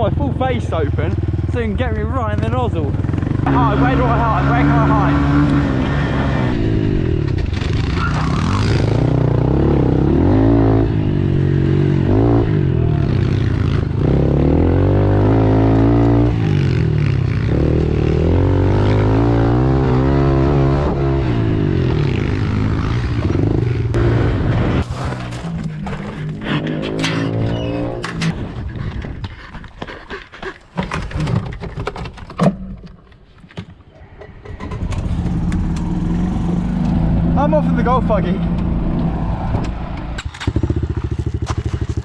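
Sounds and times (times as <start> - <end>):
pit bike engine revving: 2.3 - 24.8, 34.6 - 39.0, 40.1 - 42.0.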